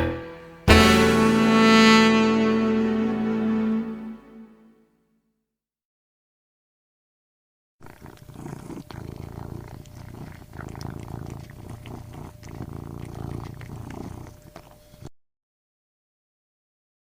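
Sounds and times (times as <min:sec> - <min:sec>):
cat purring: 0:07.9 - 0:14.8.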